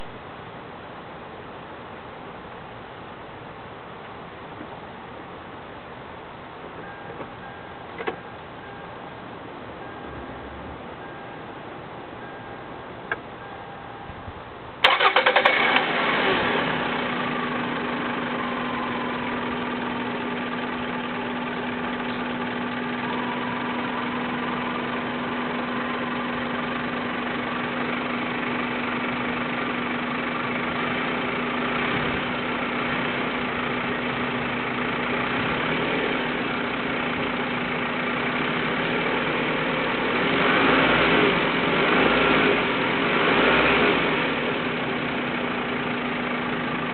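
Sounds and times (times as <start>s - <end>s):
car engine starting and idling: 0.0s - 0.2s, 14.4s - 46.9s.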